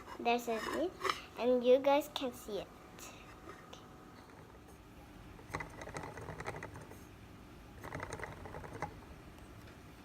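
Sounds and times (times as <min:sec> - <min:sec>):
plastic toy clicking and rattling: 0:05.5 - 0:06.9, 0:07.8 - 0:09.0.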